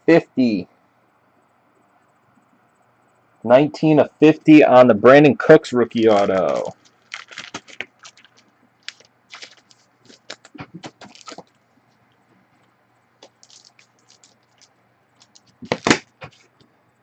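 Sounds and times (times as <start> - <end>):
trading cards being shuffled: 5.9 - 11.5, 13.2 - 16.6.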